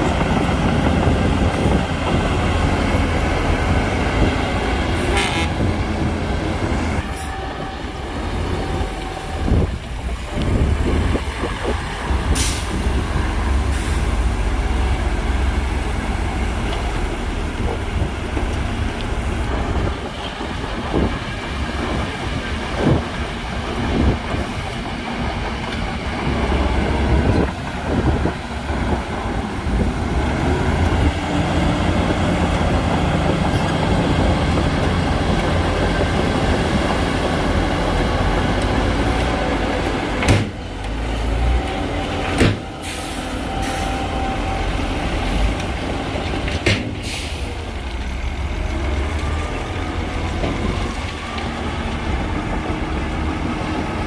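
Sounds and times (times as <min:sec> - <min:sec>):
heavy machinery engine rumble: 0:00.0 - 0:54.0.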